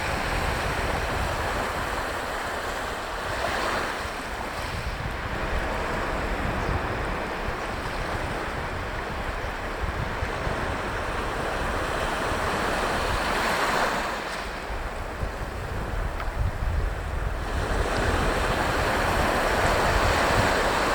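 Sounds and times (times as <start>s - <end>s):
waves washing on shore: 0.0s - 20.9s
wind rumbling on microphone: 0.0s - 20.9s.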